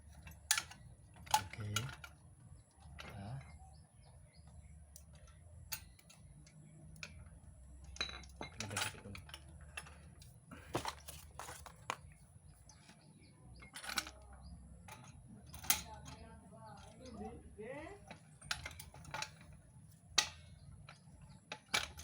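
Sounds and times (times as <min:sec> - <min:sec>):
metallic clicks of car jack: 0:18.0 - 0:22.0.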